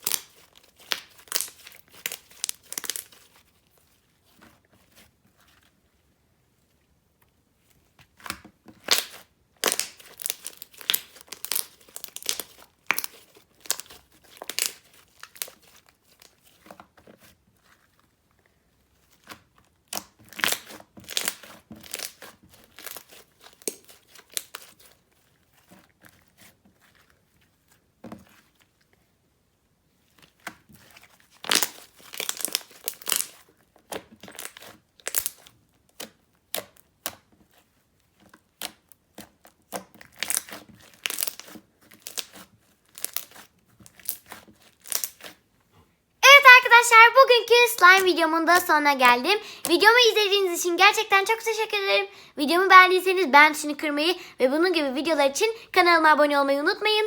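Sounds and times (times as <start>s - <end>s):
slime squished crackling and popping: 0.0s - 3.3s, 8.2s - 16.4s, 19.2s - 24.9s, 31.3s - 37.2s, 38.5s - 45.4s.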